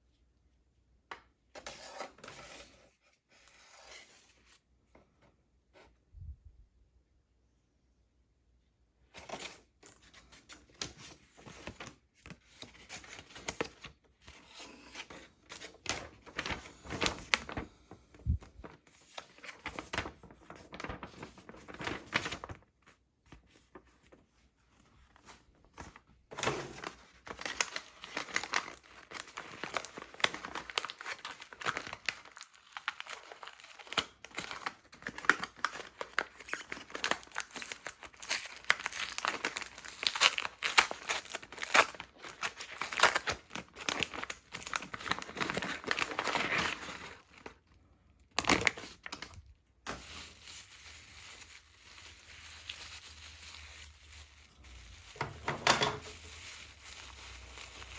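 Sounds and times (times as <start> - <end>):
packaging crinkling and tearing: 9.2 - 22.7, 25.2 - 47.7, 48.3 - 57.9.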